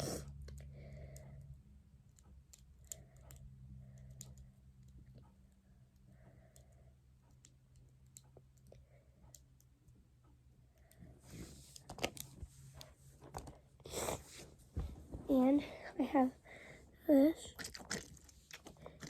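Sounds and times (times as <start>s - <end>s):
plastic toys clicking and rustling: 17.4s - 19.0s.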